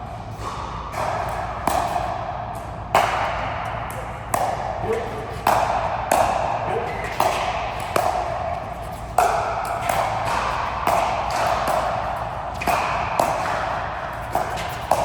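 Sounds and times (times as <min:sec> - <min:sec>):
ball striking racket and court: 0:00.0 - 0:15.0.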